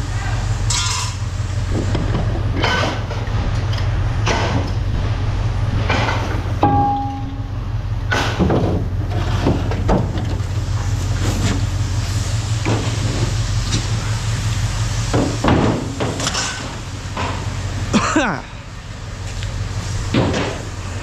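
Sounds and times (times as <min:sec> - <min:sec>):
steady low hum: 0:00.0 - 0:21.0
metal clanking against metal: 0:00.7 - 0:05.2, 0:05.8 - 0:10.6, 0:15.1 - 0:17.6.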